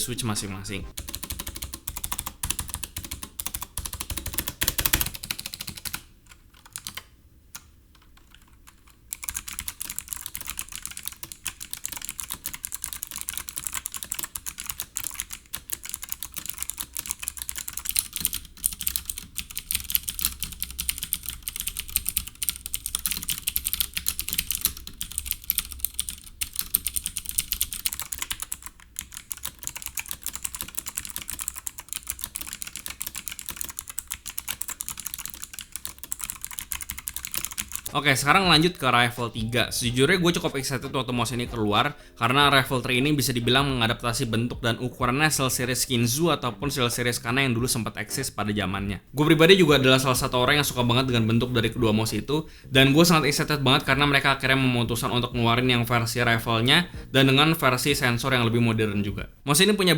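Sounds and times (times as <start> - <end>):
fast typing on clicky keyboard: 1.0 - 39.2.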